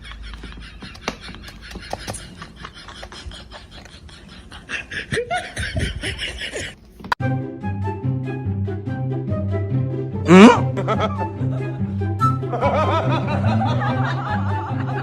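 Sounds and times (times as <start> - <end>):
laughter: 0.0 - 6.8, 10.6 - 11.8, 12.4 - 15.0
music: 7.2 - 15.0.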